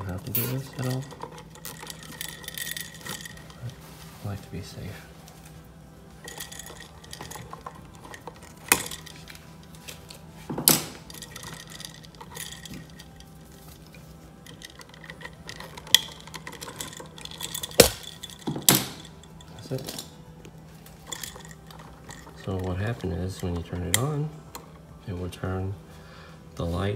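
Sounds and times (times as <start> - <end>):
light rustling and handling: 0.0 - 25.3
metallic clicks and knocks: 14.4 - 20.1.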